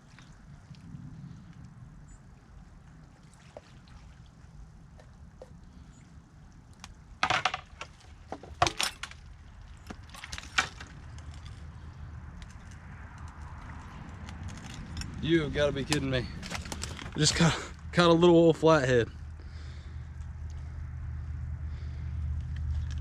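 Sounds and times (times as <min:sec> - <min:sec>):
splashing and clatter: 0:02.4 - 0:06.0, 0:06.6 - 0:17.8
low rumble: 0:10.9 - 0:23.0.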